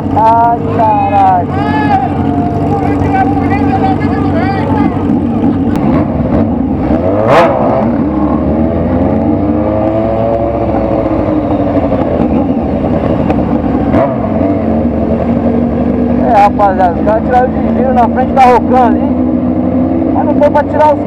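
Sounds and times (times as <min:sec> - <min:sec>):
motorcycle engine revving: 0:00.0 - 0:21.0.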